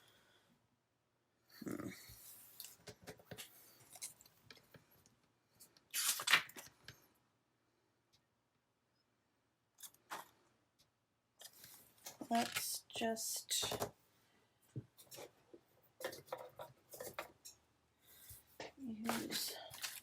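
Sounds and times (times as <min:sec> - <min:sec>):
paper and plastic rustling: 0:18.2 - 0:20.0.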